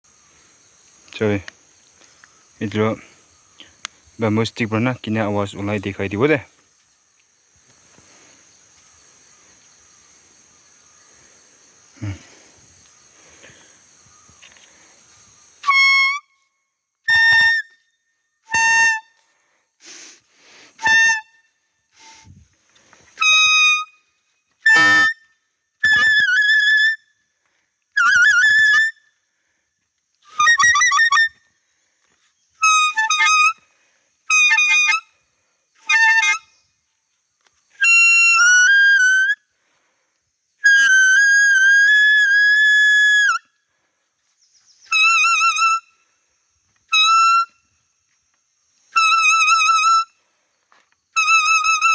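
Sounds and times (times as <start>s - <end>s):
whistle-like deer call toots: 15.6s - 17.8s, 18.4s - 22.4s, 23.2s - 27.1s, 28.0s - 29.1s, 30.2s - 31.5s, 32.6s - 33.7s, 34.3s - 35.2s, 35.8s - 36.6s, 37.7s - 39.5s, 40.6s - 43.5s, 44.8s - 46.0s, 46.9s - 47.7s, 48.9s - 50.2s, 51.2s - 51.9s.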